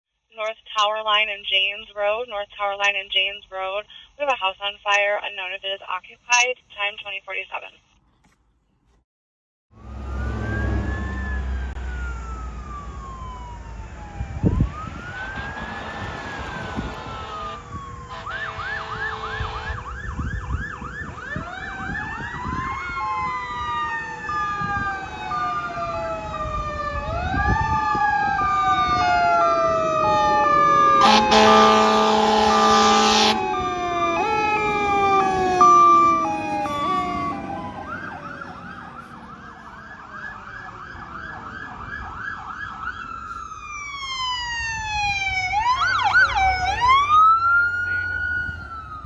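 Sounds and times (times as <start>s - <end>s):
emergency sirens wailing: 9.8s - 49.0s
siren yelp: 9.8s - 49.0s
air horn blast: 15.0s - 20.0s, 31.0s - 34.1s.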